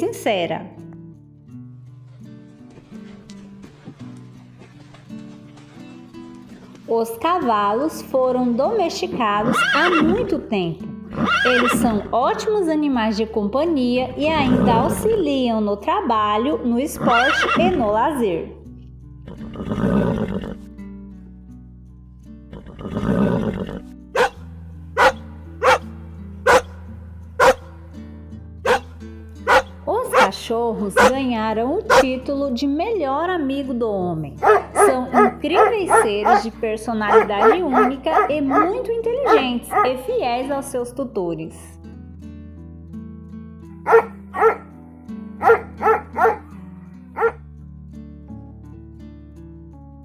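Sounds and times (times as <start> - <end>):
background music: 0.0 - 50.0
dog barking: 24.2 - 24.4, 25.0 - 25.8, 26.4 - 26.8, 27.4 - 27.7, 28.6 - 28.9, 29.5 - 30.4, 31.0 - 31.2, 31.9 - 32.1, 34.4 - 36.5, 37.1 - 40.0, 43.8 - 44.7, 45.4 - 46.5, 47.2 - 47.4.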